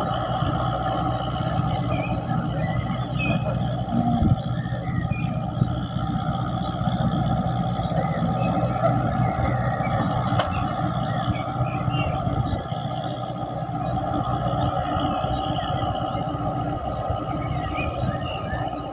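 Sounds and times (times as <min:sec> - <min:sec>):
ferry engine droning: 0:00.0 - 0:18.9.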